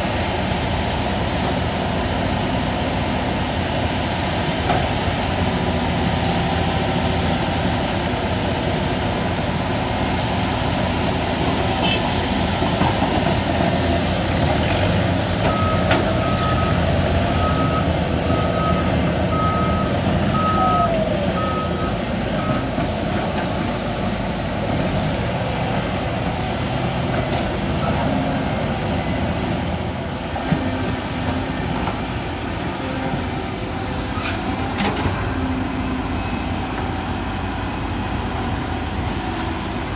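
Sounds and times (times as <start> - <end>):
heavy diesel engines running: 0.0 - 39.9
backup warning alarm beeping: 15.5 - 22.7.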